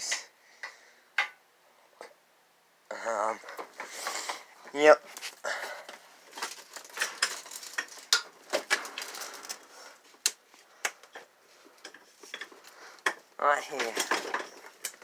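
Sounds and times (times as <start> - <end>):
hard objects clattering: 3.4 - 15.0.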